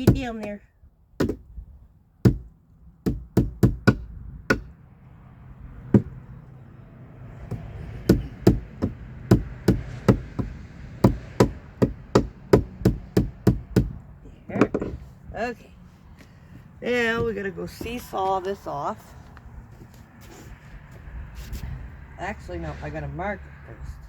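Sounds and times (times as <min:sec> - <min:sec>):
hammer striking nail in wood: 0:01.2 - 0:01.4, 0:02.2 - 0:04.7, 0:05.9 - 0:06.2, 0:07.5 - 0:14.0.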